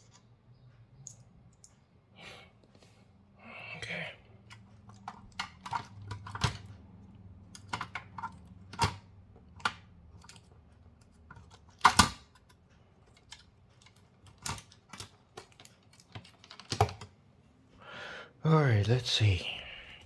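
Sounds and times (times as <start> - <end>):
clicks and knocks of parts handled: 4.4 - 17.2.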